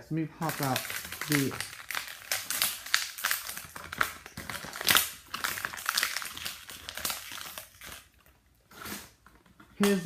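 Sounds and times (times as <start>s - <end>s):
plastic packaging crinkling: 0.3s - 10.0s.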